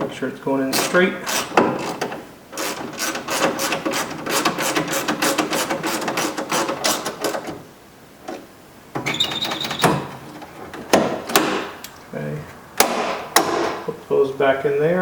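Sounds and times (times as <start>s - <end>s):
ratchet clicking: 0.8s - 2.0s.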